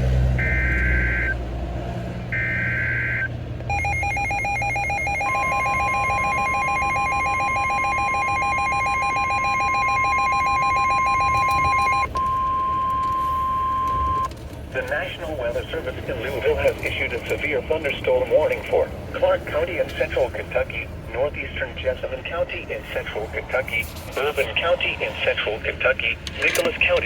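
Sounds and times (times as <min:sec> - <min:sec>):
steady warning alarm tone: 0:00.4 - 0:01.4, 0:02.3 - 0:14.3
rapidly pulsing electronic beep: 0:02.4 - 0:14.3.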